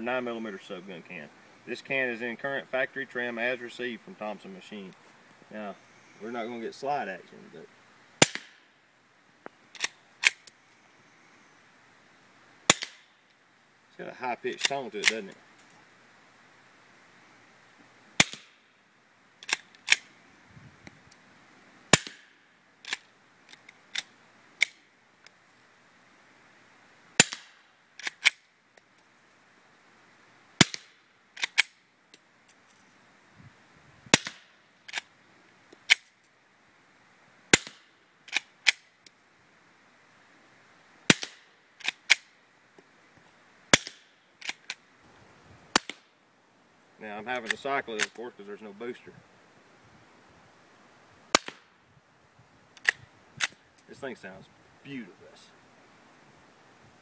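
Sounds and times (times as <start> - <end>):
suppressed gunshots: 8.2 - 8.6, 51.3 - 51.6.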